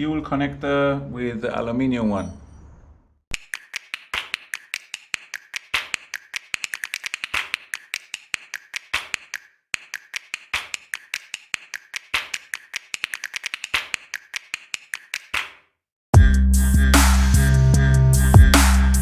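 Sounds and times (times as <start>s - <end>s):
sharp clicks and taps: 3.3s - 15.6s.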